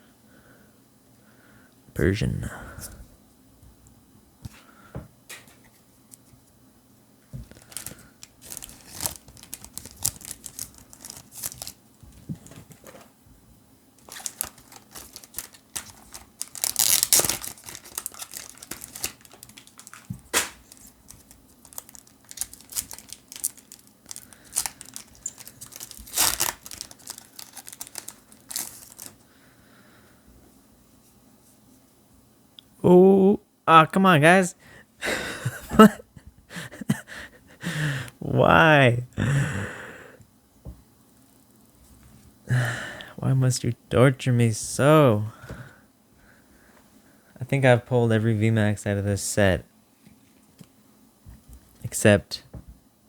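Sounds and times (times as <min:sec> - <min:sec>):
foil wrapper crinkling and tearing: 0:07.4 - 0:13.0, 0:14.0 - 0:29.2
cards rustling and snapping: 0:07.4 - 0:13.1, 0:14.0 - 0:29.2
loud wrapper rips: 0:07.5 - 0:11.8, 0:14.0 - 0:29.2.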